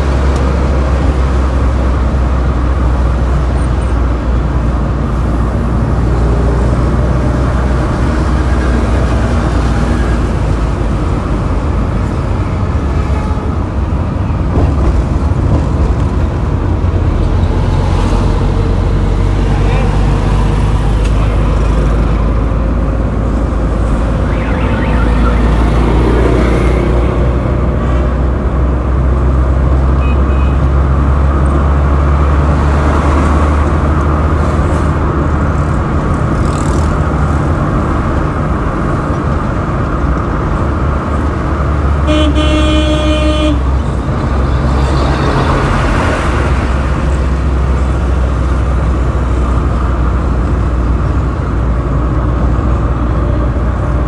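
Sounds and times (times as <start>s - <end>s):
traffic engine rumble: 0.0s - 54.0s
faint beep: 23.9s - 27.2s
vehicle horn honking: 24.2s - 26.8s, 30.0s - 30.6s, 42.0s - 43.9s.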